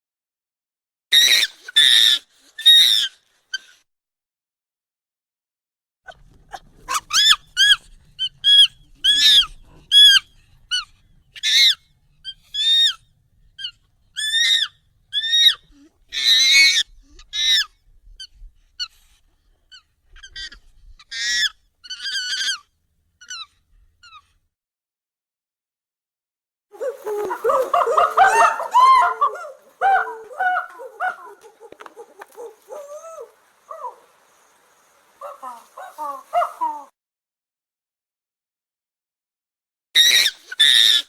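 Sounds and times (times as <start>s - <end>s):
high-pitched monkey calls: 1.2s - 3.7s, 6.5s - 13.0s, 13.6s - 18.9s, 19.7s - 24.2s, 26.8s - 36.9s, 40.0s - 41.0s.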